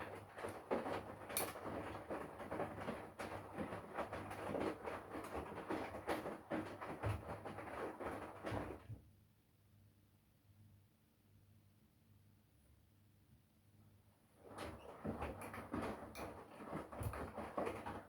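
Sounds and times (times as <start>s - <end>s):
laundry sloshing in washing machine: 0.0s - 9.0s, 14.2s - 18.0s.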